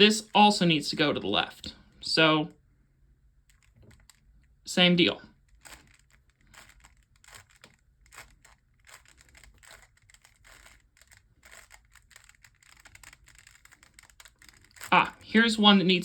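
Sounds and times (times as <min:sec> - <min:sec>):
puzzle cube layers clicking: 0:05.5 - 0:15.7.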